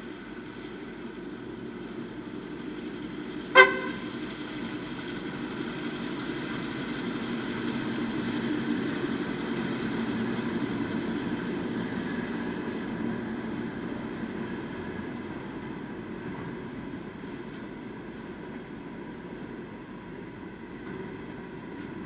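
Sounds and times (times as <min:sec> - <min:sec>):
locomotive engines running: 0:00.0 - 0:22.0
train horn toot: 0:03.6 - 0:04.2.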